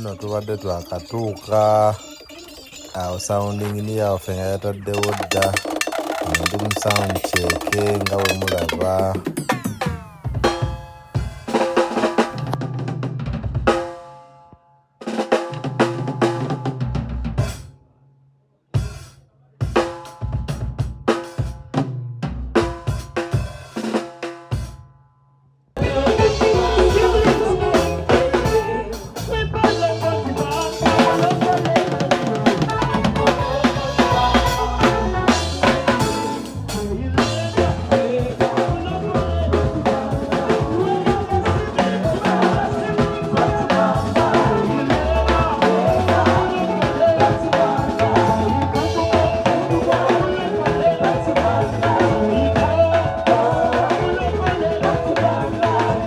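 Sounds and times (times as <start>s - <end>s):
full band music: 0.0s - 13.0s, 25.8s - 56.0s
drum kit sound check hits: 3.0s - 14.2s, 25.8s - 56.0s.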